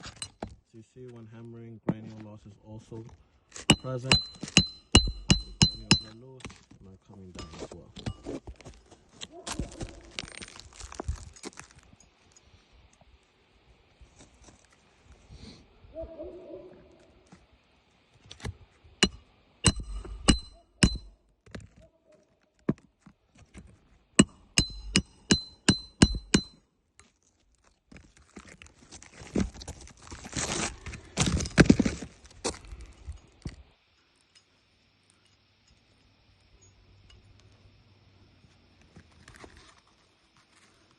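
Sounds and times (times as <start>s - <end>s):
hammer striking shingle roof: 3.6s - 6.2s, 19.0s - 21.2s, 24.2s - 26.6s
shingles scraping and rustling: 7.6s - 11.8s, 27.0s - 32.6s, 38.9s - 40.9s.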